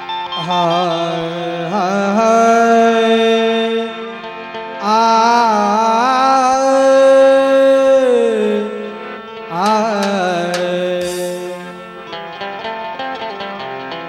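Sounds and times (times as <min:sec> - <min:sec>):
sharp clicks: 0:09.6 - 0:11.6.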